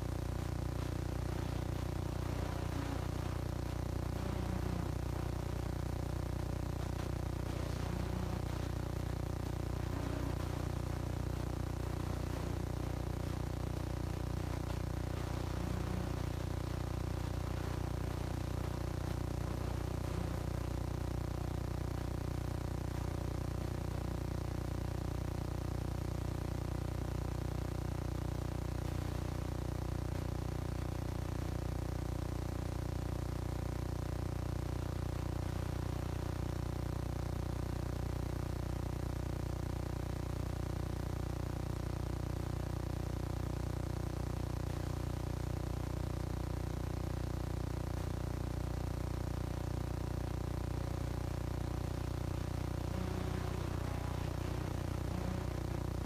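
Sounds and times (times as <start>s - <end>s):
low droning tones: 0.0s - 22.4s, 52.6s - 56.0s
faint hiss: 0.0s - 23.2s, 52.3s - 56.0s.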